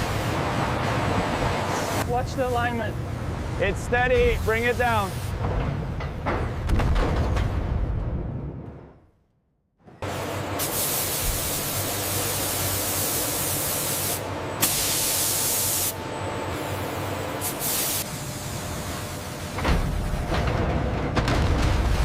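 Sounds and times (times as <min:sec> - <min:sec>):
loud hissing spray: 0:04.2 - 0:05.4, 0:10.6 - 0:16.0, 0:17.4 - 0:18.6.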